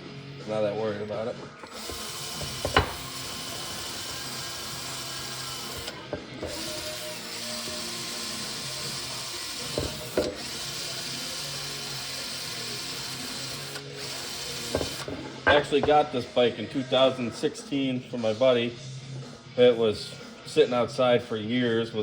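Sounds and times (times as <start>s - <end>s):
handheld electric power tool: 1.4s - 16.1s.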